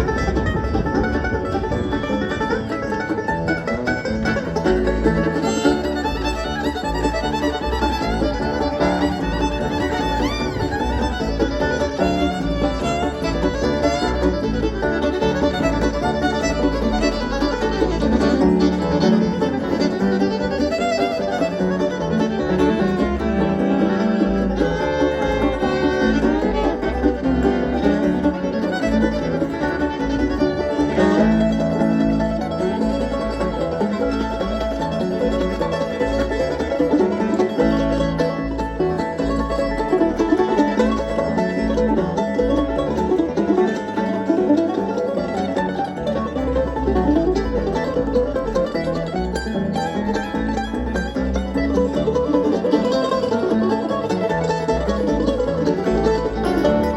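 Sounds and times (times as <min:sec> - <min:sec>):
bass pulse: 0:00.0 - 0:18.2
banjo: 0:00.0 - 0:56.9
fiddle: 0:00.0 - 0:56.9
guitar: 0:00.0 - 0:56.9.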